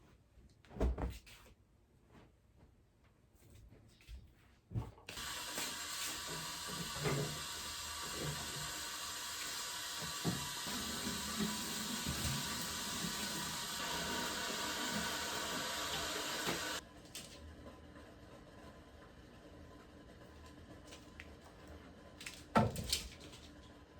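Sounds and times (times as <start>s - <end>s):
tap water running into sink: 5.1s - 16.8s.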